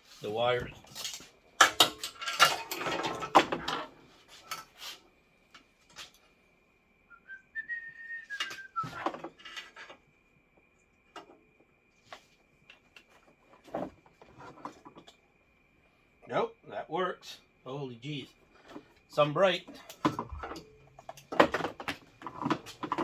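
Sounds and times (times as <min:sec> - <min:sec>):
wire leads clicking and clattering: 0:00.6 - 0:04.7, 0:19.6 - 0:23.0
rising and falling whistle-like note: 0:07.1 - 0:08.9.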